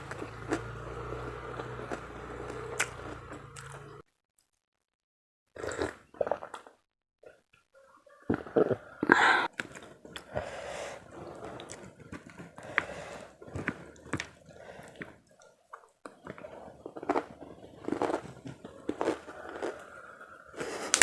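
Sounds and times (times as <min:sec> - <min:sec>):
crunchy chewing: 0:00.0 - 0:04.0, 0:11.0 - 0:21.0.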